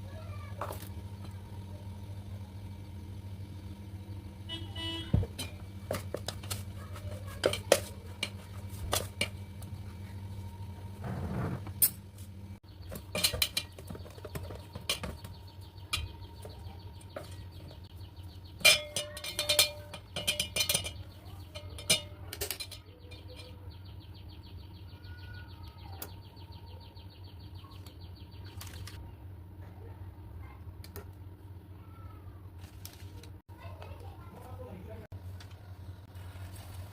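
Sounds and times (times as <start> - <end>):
steady low hum: 0.0 - 36.9
utensils and dishes clattering: 5.1 - 10.3, 12.8 - 23.8.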